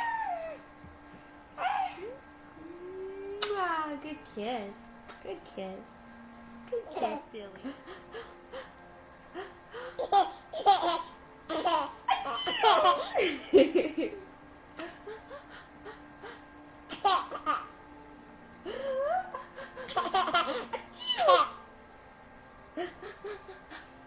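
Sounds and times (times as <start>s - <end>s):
baby laughing: 10.0s - 13.4s, 16.9s - 17.7s, 19.9s - 21.6s.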